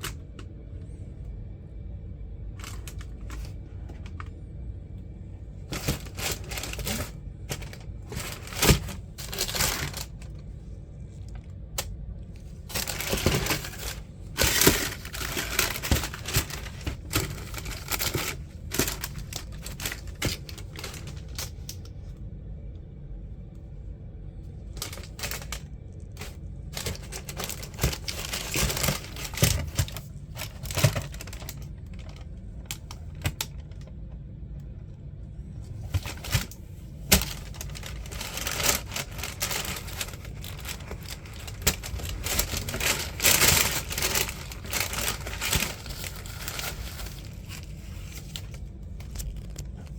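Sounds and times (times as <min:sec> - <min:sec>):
paper crinkling: 0:02.6 - 0:04.4, 0:05.6 - 0:10.5, 0:12.4 - 0:21.9, 0:24.7 - 0:33.9, 0:35.6 - 0:49.9.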